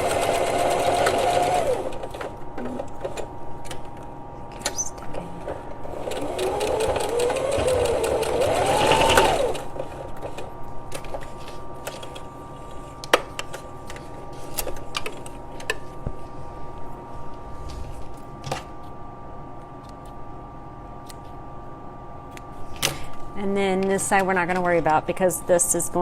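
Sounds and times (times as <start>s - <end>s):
sewing machine stitching: 0.0s - 2.1s, 5.9s - 9.7s.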